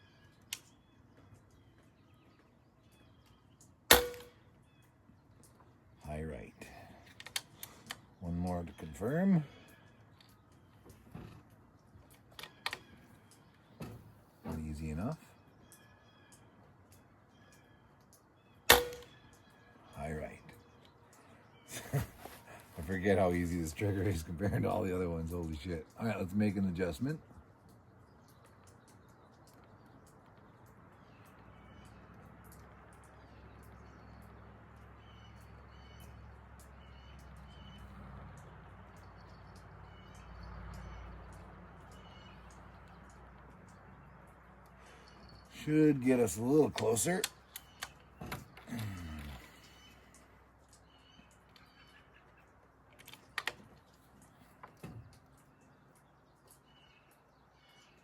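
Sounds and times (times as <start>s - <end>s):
faint bird chirps: 0.0s - 3.8s, 4.4s - 24.5s, 44.7s - 52.6s
air rifle shot snap: 3.9s - 4.4s.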